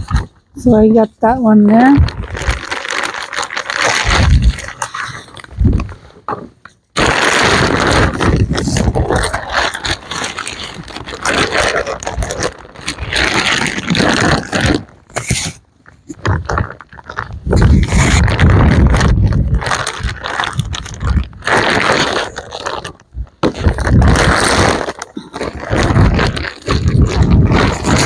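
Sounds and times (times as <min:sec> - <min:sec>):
wind buffeting microphone: 0:04.0 - 0:04.7
soil scraping and rustling: 0:07.0 - 0:28.0.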